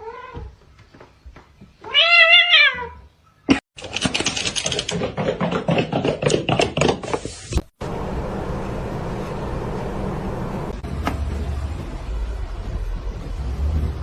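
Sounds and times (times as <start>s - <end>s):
rapid scratchy clicks and rustling: 3.8s - 7.0s.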